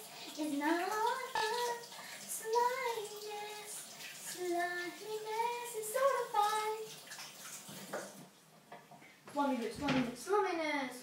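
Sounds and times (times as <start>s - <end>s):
girl singing: 0.0s - 6.9s.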